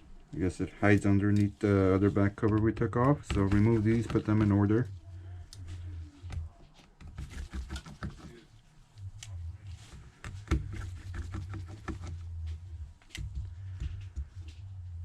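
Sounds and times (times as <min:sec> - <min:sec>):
low hum: 0:08.6 - 0:15.0.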